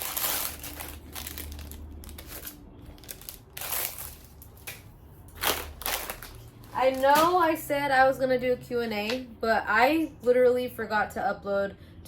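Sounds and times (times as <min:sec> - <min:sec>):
wrapping paper crinkling: 0:00.0 - 0:07.4.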